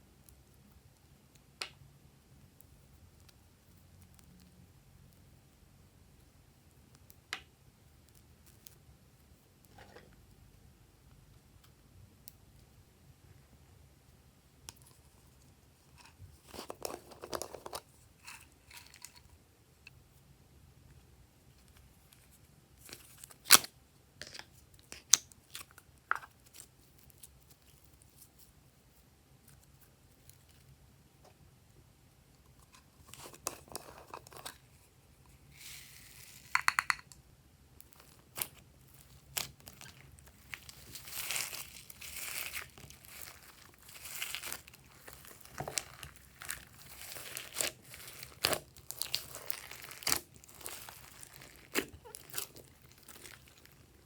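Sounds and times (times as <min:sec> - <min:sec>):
slime being kneaded: 0:37.8 - 0:54.0.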